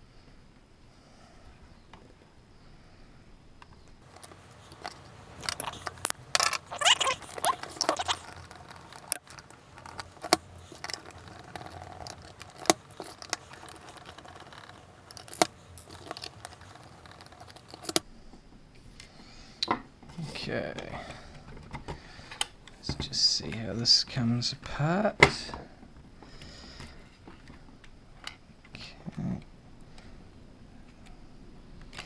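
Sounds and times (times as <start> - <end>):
metallic scraping and clinking: 4.0 - 18.0.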